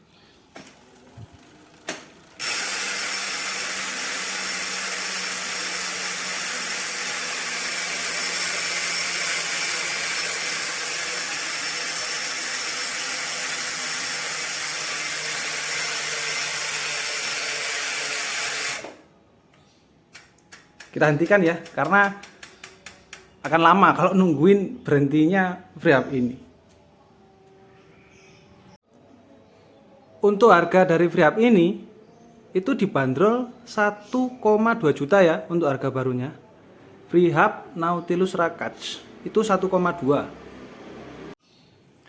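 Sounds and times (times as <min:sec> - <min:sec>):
bicycle freehub ratcheting buzz: 0:00.6 - 0:19.0
small clicks: 0:18.8 - 0:23.4.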